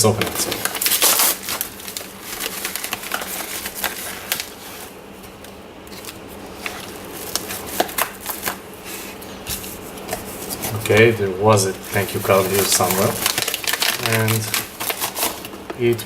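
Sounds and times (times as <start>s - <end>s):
packaging rustling and crinkling: 0.0s - 16.0s.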